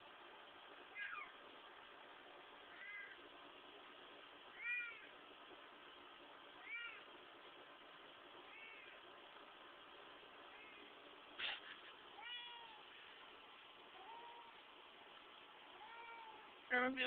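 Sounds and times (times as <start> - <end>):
cat meowing: 2.7 - 3.2, 8.4 - 9.0, 12.2 - 12.9, 14.0 - 14.6, 15.8 - 16.5.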